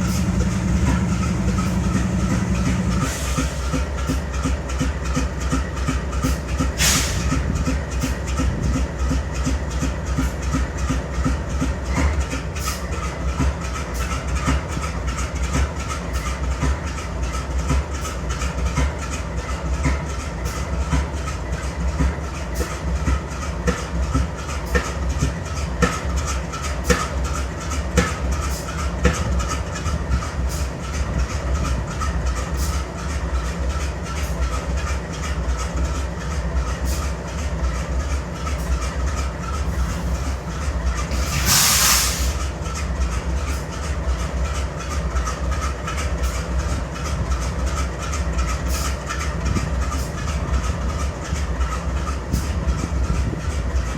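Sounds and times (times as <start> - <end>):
diesel locomotive engine idling: 0.0 - 53.9
engine misfire ticks: 0.0 - 53.9
air hiss: 41.1 - 42.4.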